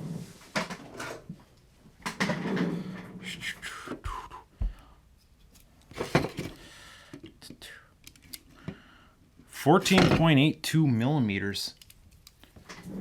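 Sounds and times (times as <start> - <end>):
man humming wordlessly: 3.2 - 4.5.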